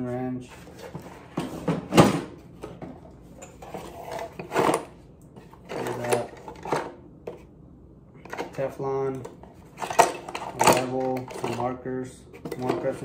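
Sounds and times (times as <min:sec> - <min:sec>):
hand tools rattling in toolbox: 0:05.7 - 0:06.9, 0:09.8 - 0:11.7.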